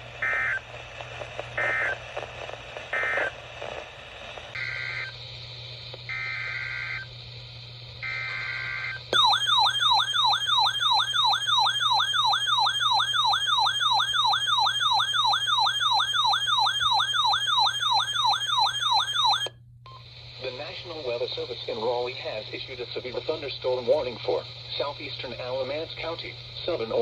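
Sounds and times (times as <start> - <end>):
buzzy data bursts: 6.1 - 9.5
warbling siren-like alert tone: 8.8 - 19.5.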